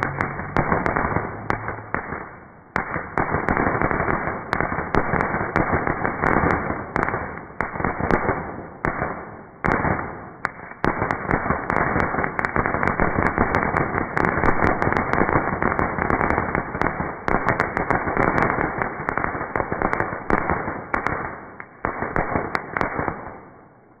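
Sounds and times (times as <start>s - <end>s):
fireworks crackling and popping: 0.0s - 24.0s.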